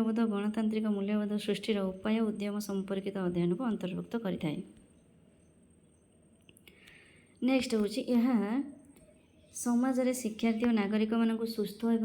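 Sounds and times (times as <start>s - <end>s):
faint high-pitched whine: 0.0s - 12.0s
faint clicks: 6.4s - 7.1s.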